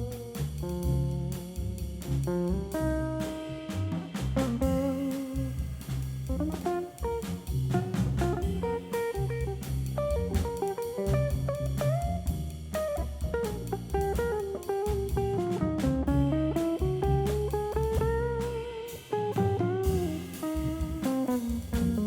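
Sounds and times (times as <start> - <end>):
jazz band playing: 0.0 - 22.0
guitar lead with bent notes: 4.4 - 5.7, 6.3 - 22.0.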